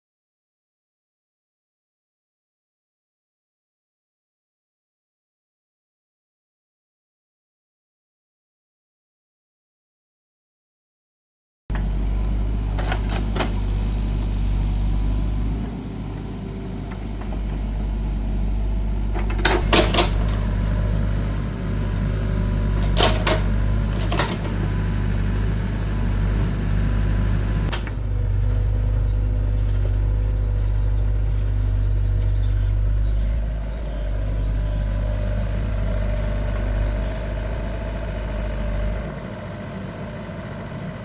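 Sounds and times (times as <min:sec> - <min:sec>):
engine humming: 0:11.7 - 0:41.0.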